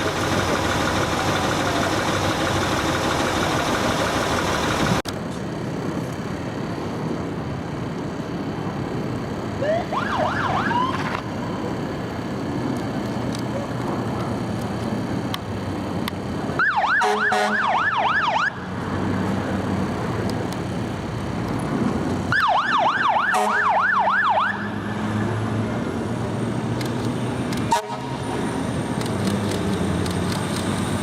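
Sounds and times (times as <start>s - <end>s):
fire engine engine: 0.0s - 31.0s
fire engine siren: 9.6s - 11.4s, 16.4s - 19.2s, 22.2s - 26.1s, 27.6s - 28.8s.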